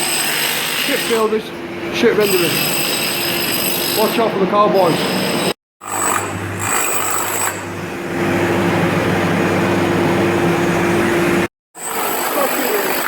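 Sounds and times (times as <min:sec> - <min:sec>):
power tool humming: 0:04.9 - 0:13.0.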